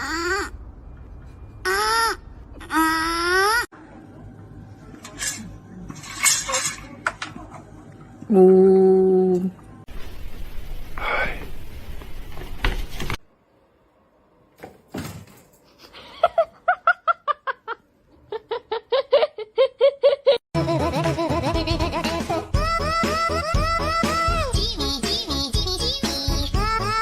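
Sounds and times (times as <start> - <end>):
person laughing: 15.8 - 23.0
music: 20.6 - 27.0.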